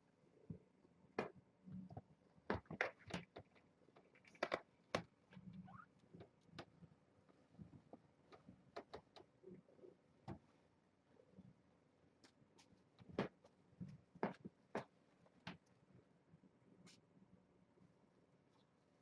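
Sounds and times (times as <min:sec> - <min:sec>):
kittens' paws tapping and scratching: 0:01.2 - 0:10.5.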